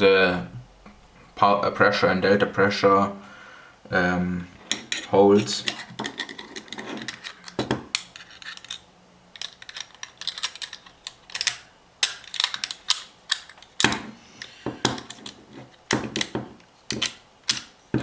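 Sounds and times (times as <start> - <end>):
small metal parts clicking: 4.7 - 17.8.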